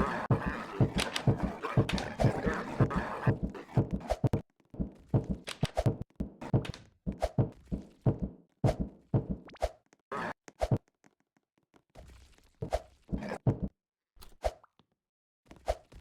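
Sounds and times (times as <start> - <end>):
knocks and thumps: 0.0 - 9.5.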